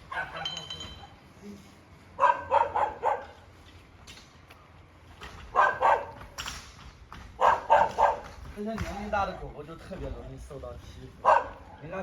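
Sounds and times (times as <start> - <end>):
dog barking: 0.1 - 0.6, 2.2 - 3.4, 5.5 - 6.2, 7.4 - 8.3, 11.2 - 11.8.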